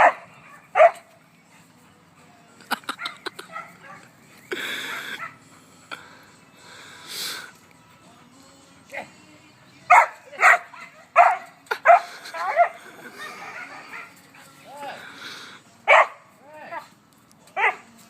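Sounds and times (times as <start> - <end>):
dog barking: 0.0 - 1.1, 3.0 - 4.1, 9.9 - 12.8, 13.4 - 14.2, 15.9 - 16.2, 17.6 - 17.9.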